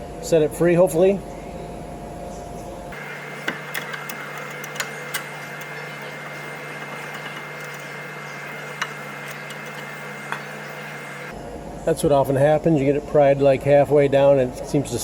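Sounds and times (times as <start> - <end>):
steady low hum: 0.0 - 11.9.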